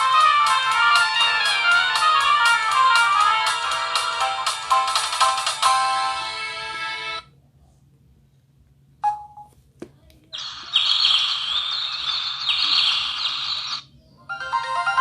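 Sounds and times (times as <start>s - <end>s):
bird chirping ringtone: 10.4s - 15.0s.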